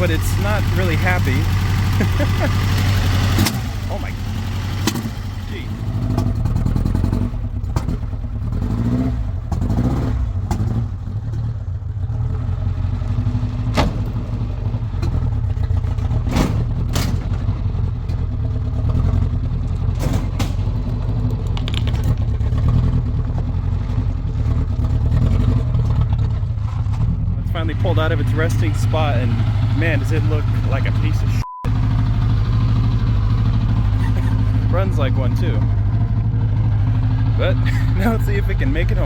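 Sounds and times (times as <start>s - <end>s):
engine running rough: 0.0s - 39.0s
sharp clacks: 21.3s - 22.3s.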